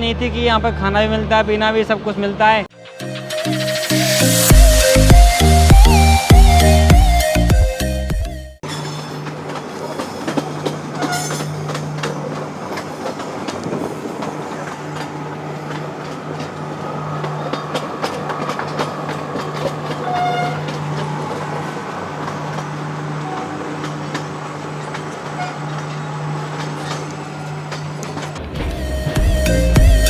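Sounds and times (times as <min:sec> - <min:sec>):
wheels clicking over rail joints: 0:08.6 - 0:29.2
train rumbling on rails: 0:08.6 - 0:30.0.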